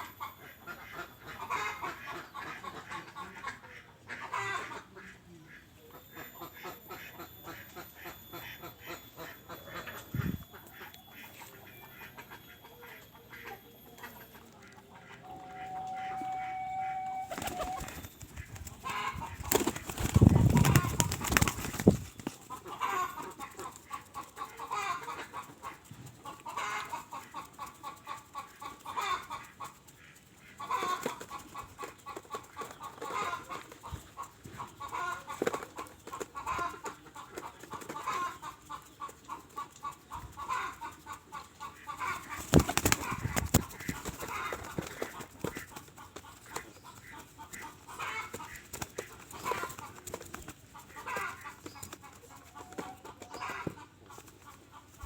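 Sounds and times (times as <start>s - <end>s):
birds clucking: 0.0s - 55.0s
wings flapping: 17.2s - 55.0s.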